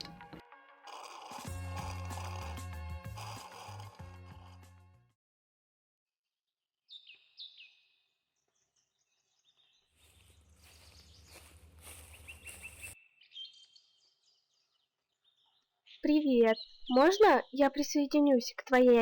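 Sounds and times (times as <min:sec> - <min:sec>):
birds chirping: 0:08.6 - 0:19.0.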